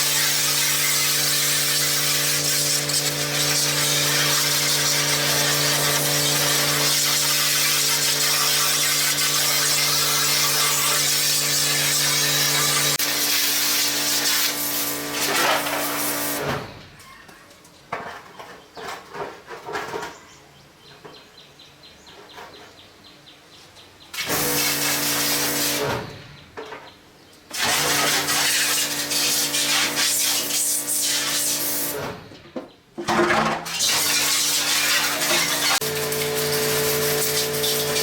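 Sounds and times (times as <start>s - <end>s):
machine humming and hissing: 35.5s - 38.0s.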